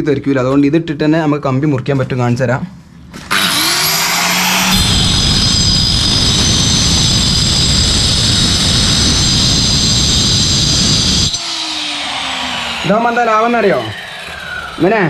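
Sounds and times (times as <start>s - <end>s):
motor winding down whine: 3.2s - 15.0s
cutting machine grinding metal rod: 3.3s - 15.0s.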